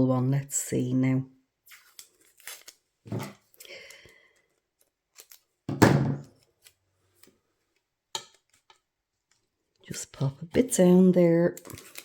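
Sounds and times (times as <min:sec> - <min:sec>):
tape pulled and torn: 0:01.7 - 0:03.4.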